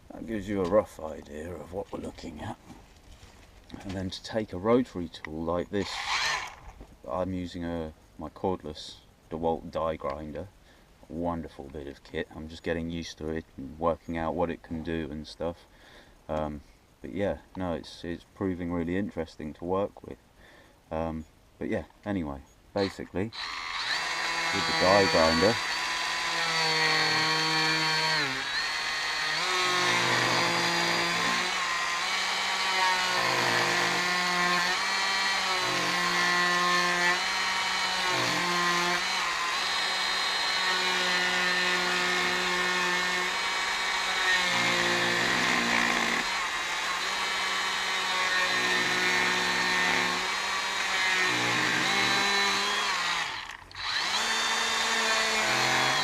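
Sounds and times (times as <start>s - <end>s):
die grinder carving wood: 5.8s - 6.6s, 22.8s - 56.0s.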